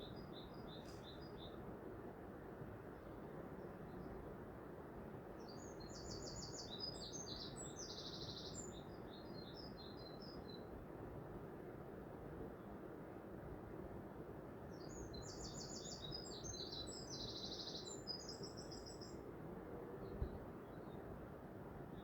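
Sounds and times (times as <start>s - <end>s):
small bird singing: 5.4s - 10.7s, 14.7s - 19.2s.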